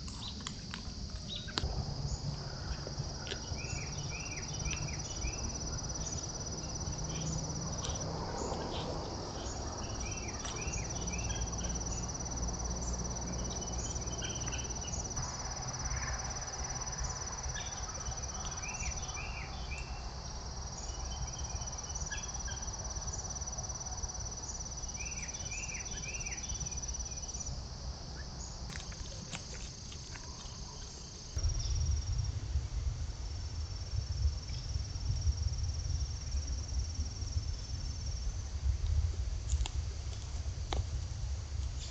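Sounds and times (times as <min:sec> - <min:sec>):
insects trilling: 0:00.0 - 0:38.7
low microphone rumble: 0:31.4 - 0:41.9.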